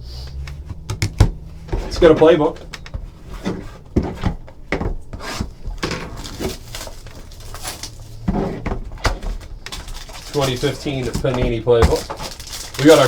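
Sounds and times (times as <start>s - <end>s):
taps and knocks on cardboard: 0.4s - 1.9s
packaging rustling and tearing: 5.2s - 13.0s.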